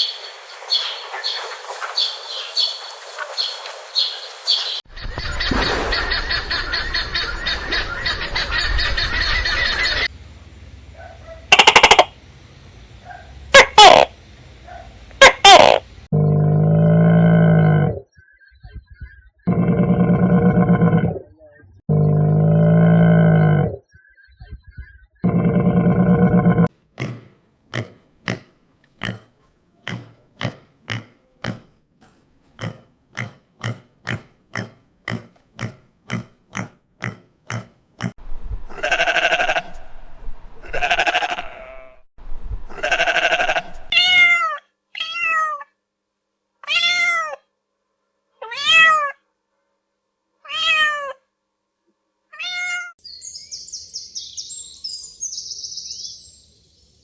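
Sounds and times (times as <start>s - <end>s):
animal calling: 10.9s - 12.2s, 13.0s - 16.9s, 42.7s - 45.6s
animal grunting: 15.5s - 18.0s, 19.4s - 21.3s, 21.9s - 23.8s, 25.2s - 31.8s, 32.6s - 40.0s.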